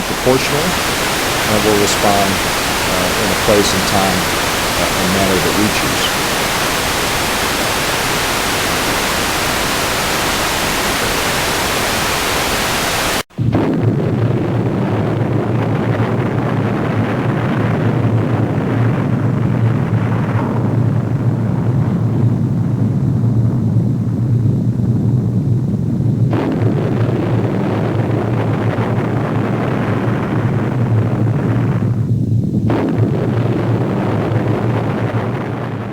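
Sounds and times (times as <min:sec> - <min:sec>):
static hiss: 0:00.0 - 0:13.3
deep explosion rumble: 0:13.5 - 0:35.9.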